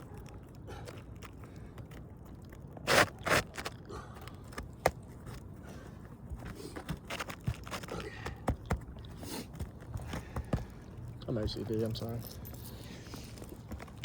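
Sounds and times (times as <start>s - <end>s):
shingles scraping: 2.8s - 3.8s.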